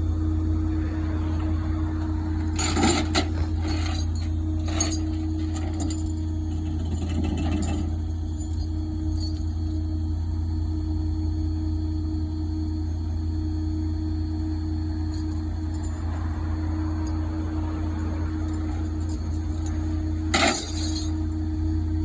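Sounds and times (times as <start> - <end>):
vehicle engine humming: 0.0 - 22.0
rattling jangling clicks: 2.5 - 9.8, 15.1 - 16.1, 18.0 - 21.2.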